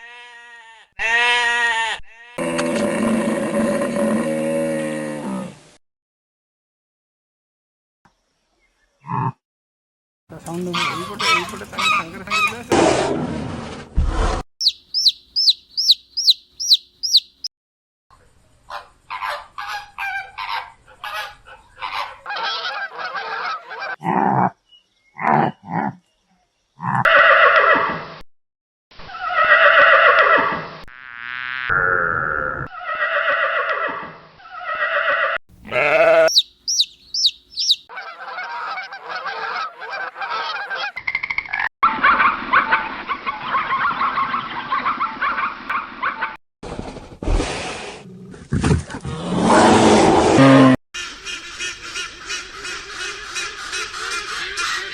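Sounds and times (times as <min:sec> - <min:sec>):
livestock bleating: 0:00.0 - 0:02.6, 0:35.6 - 0:36.4
quick high chirps: 0:14.6 - 0:17.5, 0:36.2 - 0:37.9.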